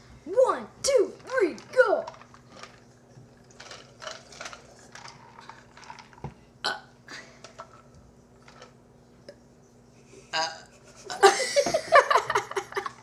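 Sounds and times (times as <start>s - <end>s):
person burping: 6.6s - 6.9s.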